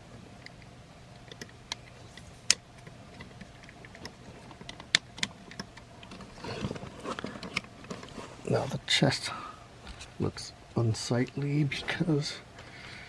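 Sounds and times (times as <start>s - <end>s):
handling rustle: 1.8s - 8.8s.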